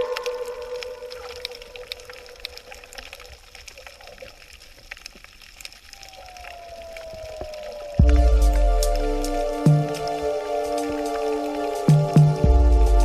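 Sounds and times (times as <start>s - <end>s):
ambient music: 0.0s - 1.6s, 7.6s - 13.0s
loud chord with deep bass: 8.0s - 10.8s, 12.0s - 13.0s.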